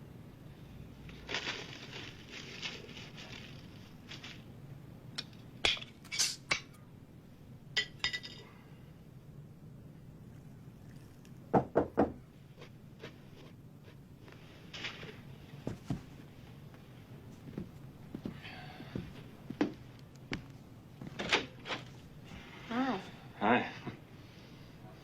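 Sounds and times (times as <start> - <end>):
glass and dishes clinking: 7.8 - 8.6
knocks on a wooden door: 11.5 - 12.2.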